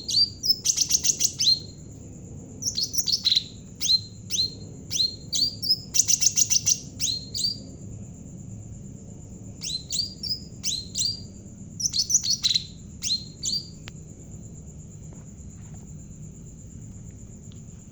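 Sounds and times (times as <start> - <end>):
songbird singing sharp chirps: 0.0 - 1.8, 2.6 - 7.7, 9.5 - 14.0.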